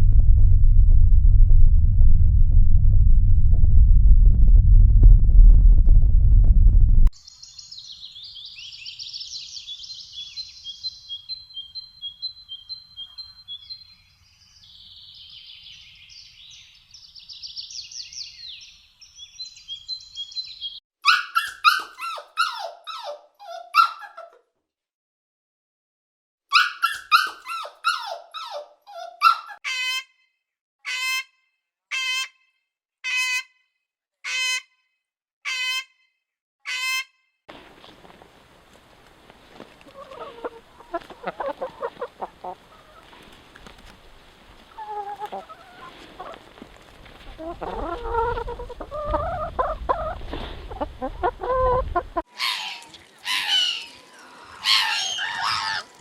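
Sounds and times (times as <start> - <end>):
sharp animal calls: 21.0 - 24.3, 26.5 - 30.1, 50.8 - 56.0
animal chirping and trilling: 21.1 - 24.2, 26.5 - 29.8, 51.0 - 56.0.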